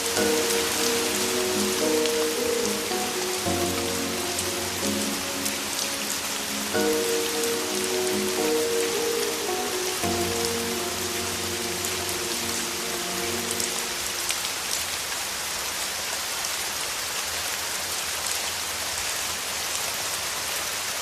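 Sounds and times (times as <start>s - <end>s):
song held notes: 0.0s - 14.3s
rain pattering: 0.0s - 21.0s.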